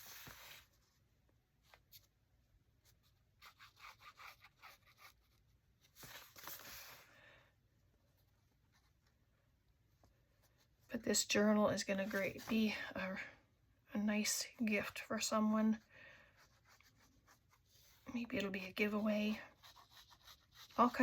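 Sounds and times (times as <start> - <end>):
paper rustling and rubbing: 0.0 - 1.0, 2.8 - 7.1, 16.4 - 21.0.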